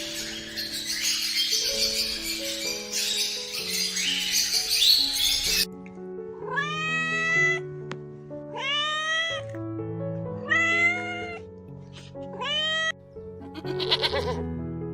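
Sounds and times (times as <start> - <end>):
background music: 0.0 - 14.9
cat meowing: 6.4 - 7.7, 8.5 - 9.6, 10.4 - 11.5, 12.3 - 13.0, 13.6 - 14.4.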